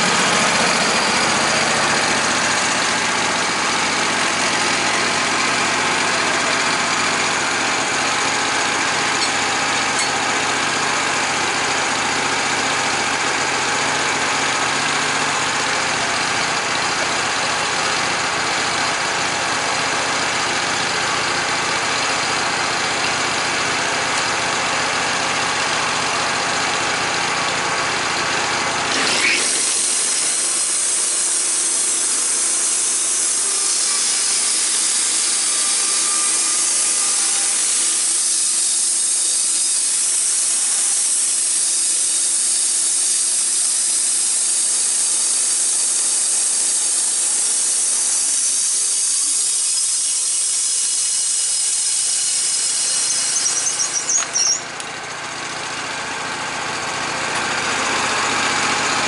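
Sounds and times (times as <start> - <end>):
high-pitched sawing: 0.0 - 10.8, 28.9 - 45.0, 45.6 - 54.8
engine running: 0.0 - 59.0.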